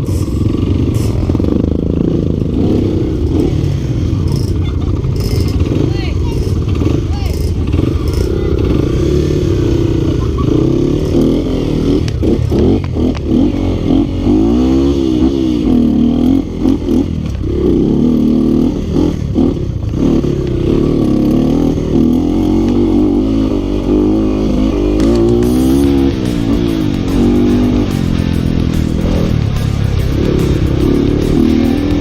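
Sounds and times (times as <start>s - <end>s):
engine clatter and knocks: 0.0s - 8.9s, 25.0s - 32.0s
motorcycle engine revving: 0.0s - 32.0s.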